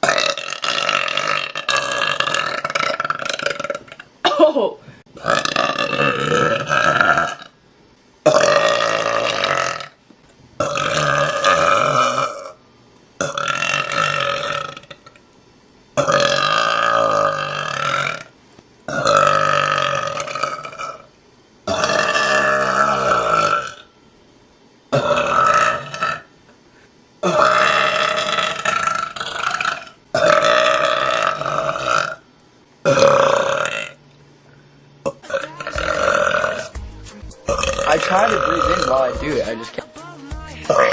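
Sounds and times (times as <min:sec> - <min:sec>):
woman burping: 0:00.0 - 0:07.5, 0:10.6 - 0:12.6, 0:18.9 - 0:21.0, 0:21.7 - 0:23.8, 0:24.9 - 0:26.2, 0:27.2 - 0:32.2, 0:32.8 - 0:34.0, 0:35.0 - 0:36.7, 0:37.5 - 0:39.0.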